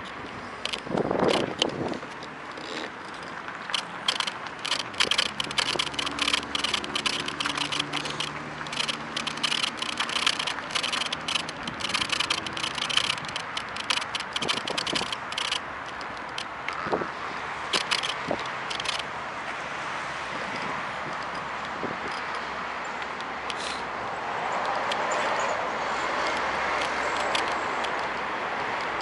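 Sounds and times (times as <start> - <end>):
phone holder squeaking and clicking: 0.7 - 17.0, 17.7 - 19.0, 20.5 - 22.9.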